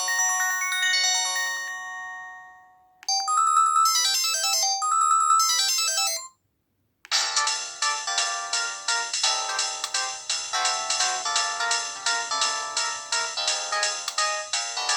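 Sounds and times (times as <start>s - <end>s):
polyphonic ringtone melody: 0.0s - 6.3s, 7.1s - 14.9s.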